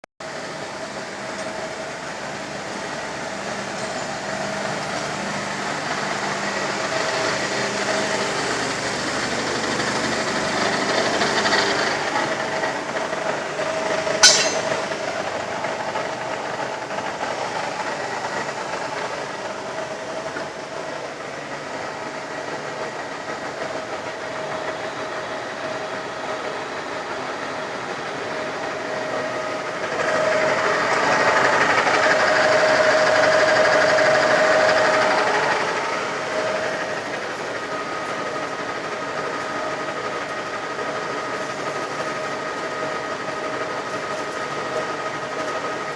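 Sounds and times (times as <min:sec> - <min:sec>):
sharp metal clank: 0:14.2 - 0:15.0.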